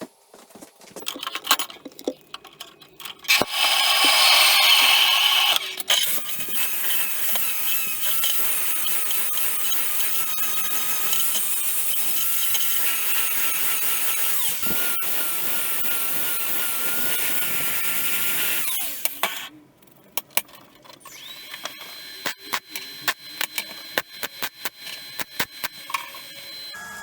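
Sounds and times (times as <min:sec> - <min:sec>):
power tool whining: 0:02.4 - 0:19.5, 0:21.0 - 0:27.0
sharp clicks: 0:20.2 - 0:26.2.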